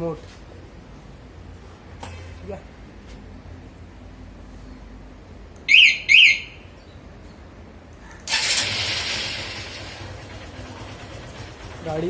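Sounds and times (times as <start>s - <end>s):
motorcycle alarm chirps: 5.7s - 6.7s
motorcycle engine starting: 8.2s - 12.0s.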